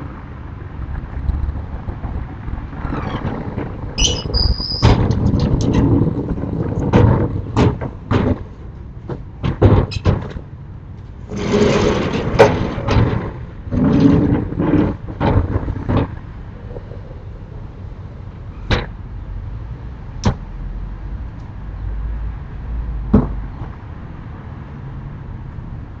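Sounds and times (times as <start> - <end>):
shutters rattling and scraping: 2.8 - 16.4
sharp knocks: 4.2 - 10.4, 23.1 - 23.8.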